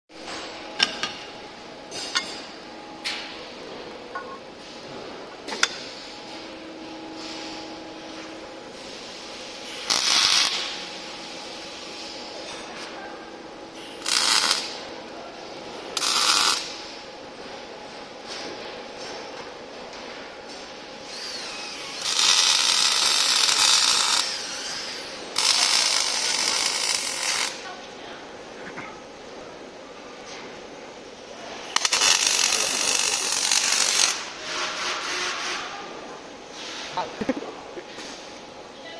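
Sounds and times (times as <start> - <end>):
welding machine humming: 5.6 - 12.6, 13.8 - 15.0, 15.6 - 17.1, 21.0 - 27.8, 31.2 - 34.7.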